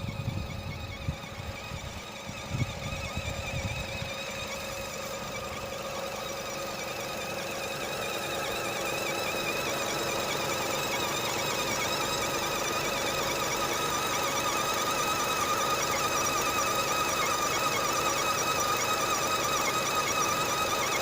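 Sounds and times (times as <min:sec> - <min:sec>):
car engine running: 0:00.0 - 0:08.8
belt whistle-squeal: 0:00.0 - 0:21.0.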